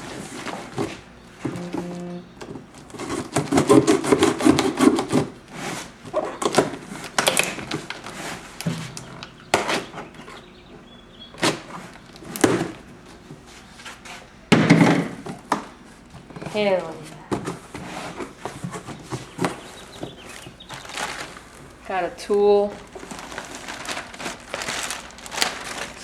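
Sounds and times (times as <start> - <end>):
cardboard packaging crackling: 1.5 - 10.3, 18.0 - 26.0.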